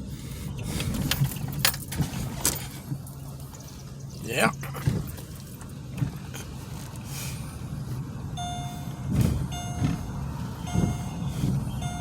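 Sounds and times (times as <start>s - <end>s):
car cabin rumble: 0.0s - 12.0s
high electronic beep: 8.4s - 8.8s, 9.5s - 9.9s, 11.8s - 12.0s
soft bumps: 9.0s - 12.0s.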